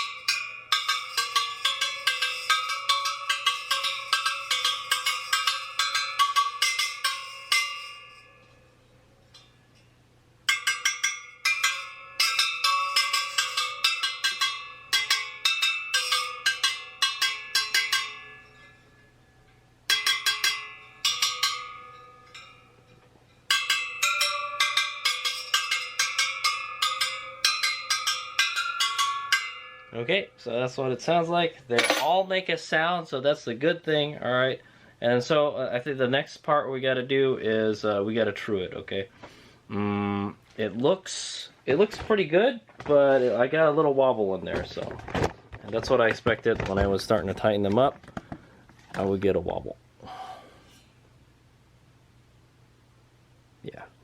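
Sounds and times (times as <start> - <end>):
metallic pings of struck spokes: 0.0 - 30.5.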